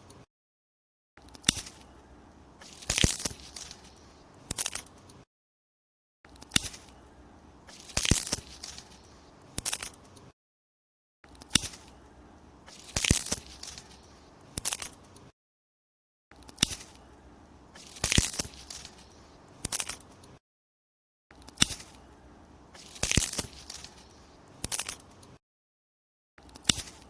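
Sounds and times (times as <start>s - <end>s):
wooden branches snapping: 2.6s - 4.9s, 6.4s - 6.9s, 7.7s - 10.0s, 12.7s - 15.0s, 16.5s - 17.0s, 17.8s - 20.0s, 21.5s - 22.0s, 22.8s - 25.0s, 26.5s - 27.0s.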